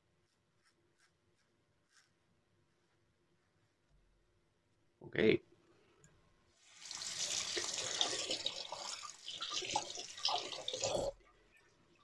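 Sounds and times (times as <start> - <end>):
tap water running into sink: 6.7 - 11.3.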